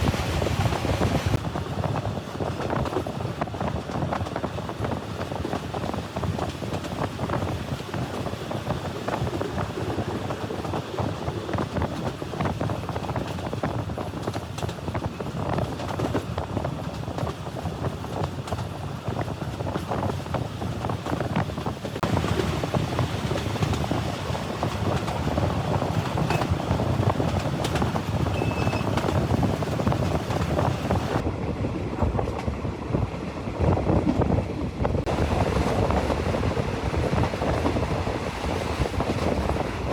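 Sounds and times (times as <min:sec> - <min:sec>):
train rumbling on rails: 0:00.0 - 0:39.9
wind buffeting microphone: 0:00.0 - 0:39.9.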